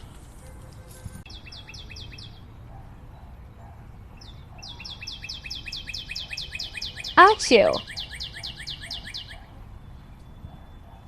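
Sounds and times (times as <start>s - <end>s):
faint low background noise: 5.6s - 8.0s.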